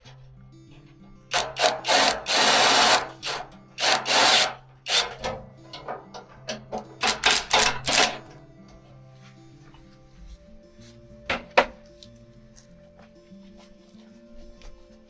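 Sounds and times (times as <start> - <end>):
background music: 0.0 - 15.0
hand tool rasping: 0.8 - 8.4.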